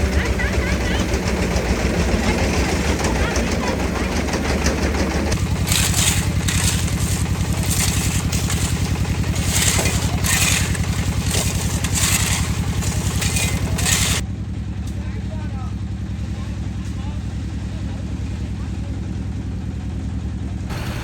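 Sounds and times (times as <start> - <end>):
concrete churning in drum: 0.0 - 14.2
concrete mixer engine chugging: 0.0 - 14.5, 15.4 - 21.0.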